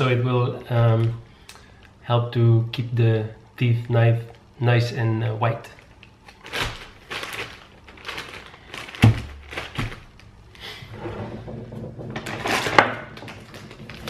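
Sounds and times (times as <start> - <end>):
rustling and scraping: 5.7 - 14.0.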